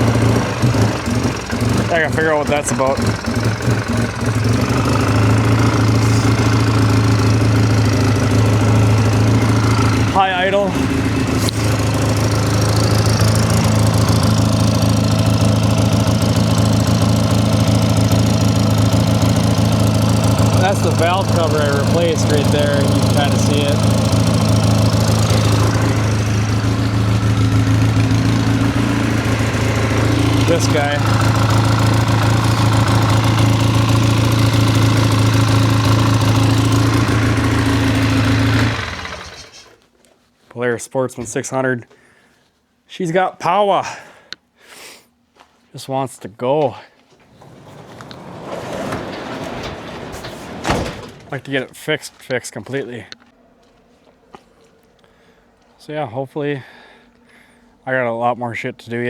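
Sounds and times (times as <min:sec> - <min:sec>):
atv engine at high idle: 0:00.0 - 0:39.9.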